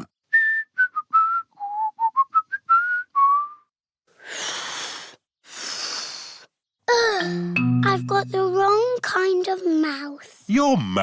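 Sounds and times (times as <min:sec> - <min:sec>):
person whistling a tune: 0:00.3 - 0:03.7.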